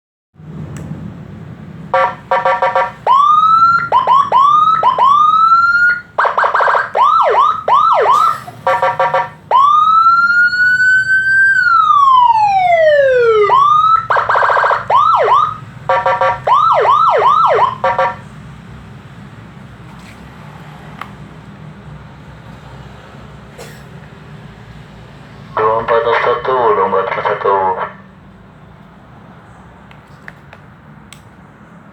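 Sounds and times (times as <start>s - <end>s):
electronic siren switching tones: 1.9s - 18.2s.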